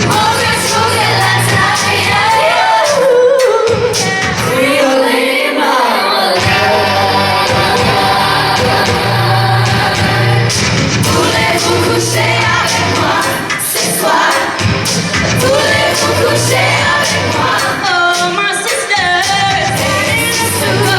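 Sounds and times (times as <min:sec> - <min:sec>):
musical accompaniment: 0:00.0 - 0:20.9
voices singing together: 0:00.0 - 0:20.9.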